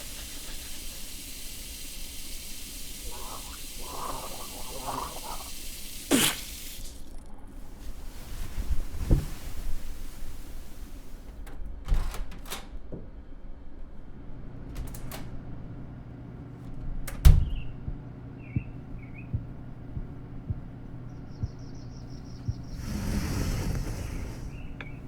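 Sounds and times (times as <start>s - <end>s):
fast high ticking: 0.0s - 6.4s.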